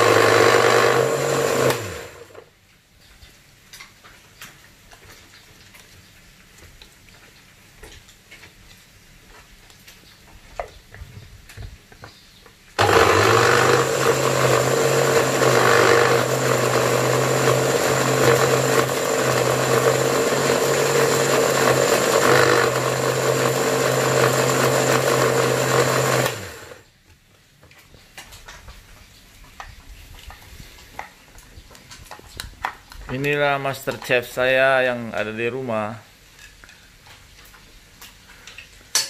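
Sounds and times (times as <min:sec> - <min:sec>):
blender running: 0:00.0 - 0:02.4, 0:12.8 - 0:26.8.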